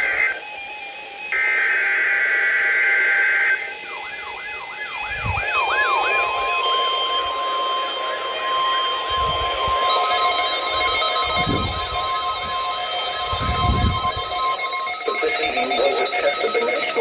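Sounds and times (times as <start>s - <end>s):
steady warning alarm tone: 0.0s - 17.0s
falling siren-like tone: 3.3s - 17.0s
two-tone data screech: 9.8s - 17.0s.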